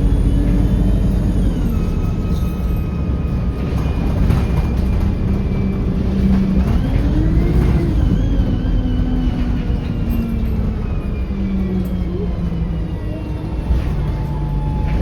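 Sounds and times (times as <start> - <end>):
diesel engine rumble: 0.0 - 15.0.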